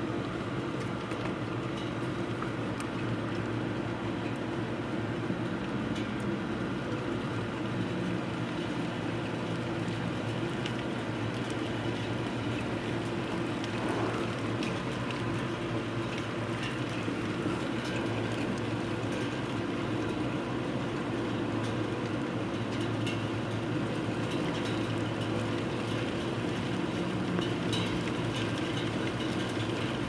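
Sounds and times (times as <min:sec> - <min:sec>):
sharp ticks of raindrops: 0:00.0 - 0:30.0
heavy rain pouring: 0:13.2 - 0:17.6.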